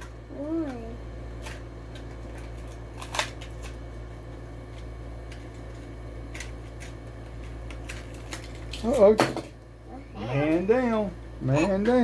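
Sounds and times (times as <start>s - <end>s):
steady low hum: 0.0s - 12.0s
plastic package crinkling: 5.3s - 9.1s.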